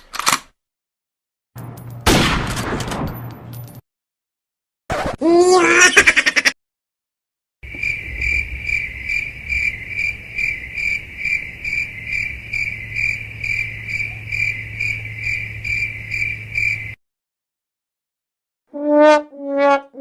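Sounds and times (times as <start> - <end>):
cricket chirping: 7.6 - 17.0.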